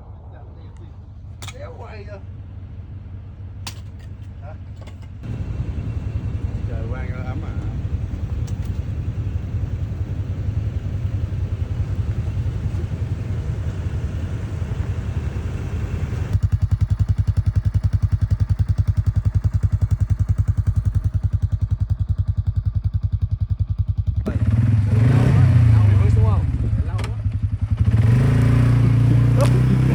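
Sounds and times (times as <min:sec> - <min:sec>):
vehicle engine running: 0:00.0 - 0:29.9
pulsing engine note: 0:05.2 - 0:16.4.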